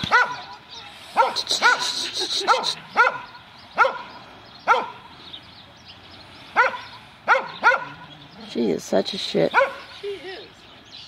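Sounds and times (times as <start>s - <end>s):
dog barking: 0.1s - 0.6s, 1.2s - 5.0s, 6.6s - 8.1s, 9.5s - 10.0s.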